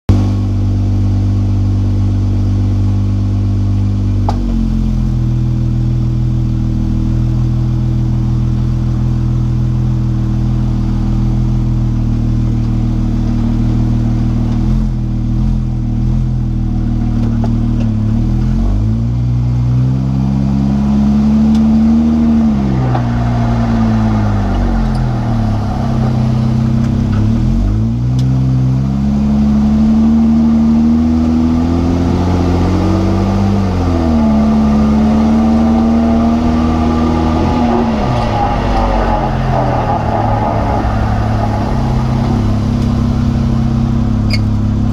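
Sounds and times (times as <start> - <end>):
car engine driving: 0.1 - 44.9
driveline whine: 20.7 - 44.9.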